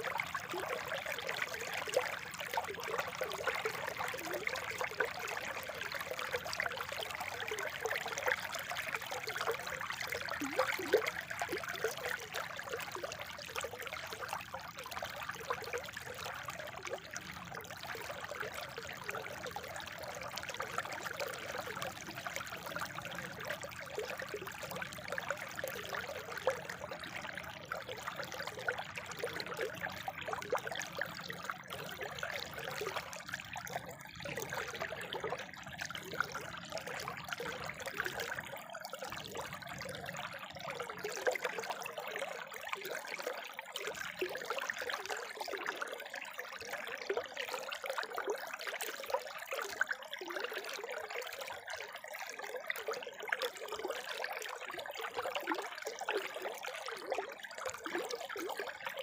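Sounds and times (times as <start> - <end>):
water trickling and splashing: 0.0 - 59.0.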